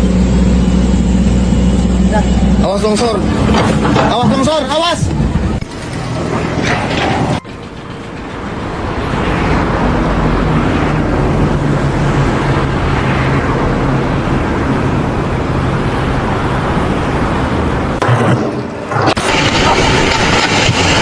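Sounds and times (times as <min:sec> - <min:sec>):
engine running steadily: 0:00.0 - 0:21.0.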